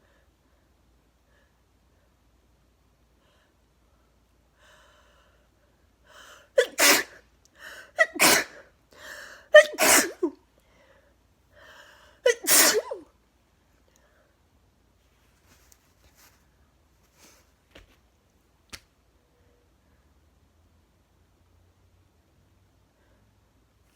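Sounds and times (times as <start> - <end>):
voiced breath-in: 3.2 - 6.6, 7.5 - 8.0, 8.9 - 9.5, 10.6 - 12.2
woman sneezing: 6.6 - 7.2, 7.9 - 8.7, 9.5 - 10.4, 12.3 - 13.1.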